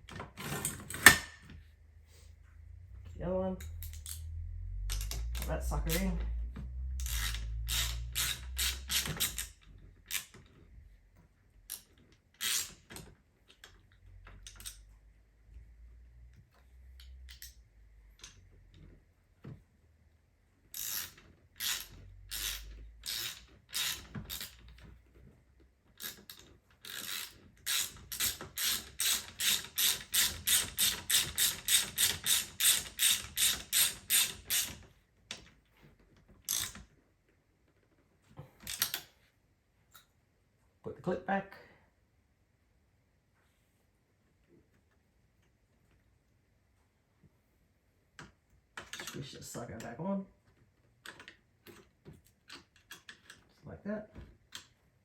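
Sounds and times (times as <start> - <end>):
socket ratchet clicking: 3.6 - 6.1, 6.8 - 10.4, 11.7 - 13.0, 20.8 - 24.6, 26.0 - 34.8, 38.6 - 39.0.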